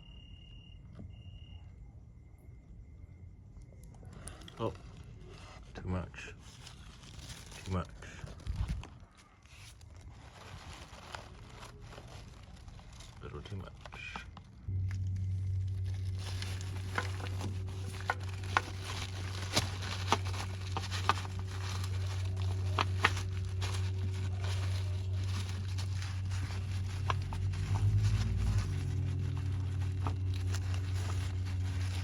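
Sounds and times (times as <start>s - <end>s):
steady low hum: 11.4s - 32.0s.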